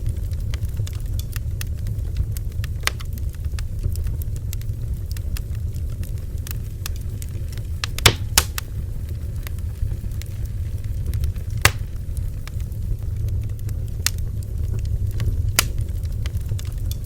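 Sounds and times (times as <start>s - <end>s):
bonfire rumbling: 0.0s - 17.0s
fire crackling and popping: 0.0s - 17.0s
wood snapping in fire: 0.0s - 17.0s.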